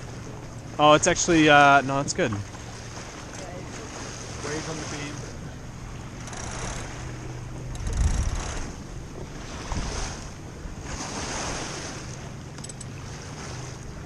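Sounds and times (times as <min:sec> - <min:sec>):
water washing along hull: 0:00.0 - 0:14.0
wind buffeting microphone: 0:03.7 - 0:14.0.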